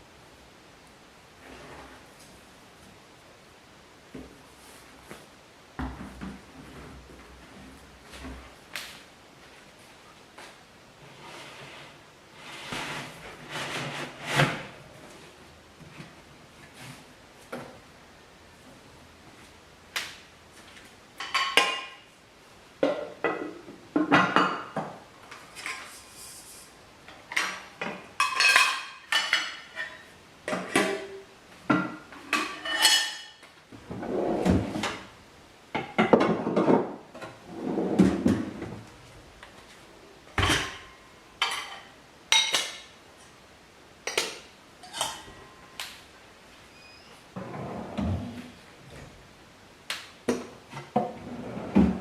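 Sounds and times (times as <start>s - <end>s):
dishes and cutlery clinking: 21.2s - 22.0s, 27.3s - 31.2s, 31.8s - 33.4s, 40.4s - 42.9s, 44.1s - 45.7s.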